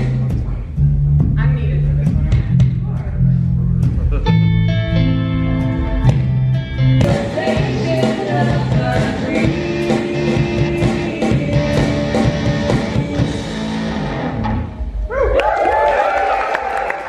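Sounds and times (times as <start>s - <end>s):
drums steady beat: 0.0s - 14.2s
live rock band playing: 3.6s - 15.0s.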